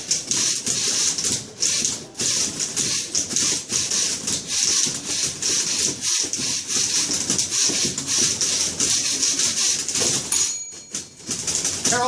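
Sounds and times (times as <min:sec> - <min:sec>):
typewriter keys clattering: 0:06.9 - 0:12.0.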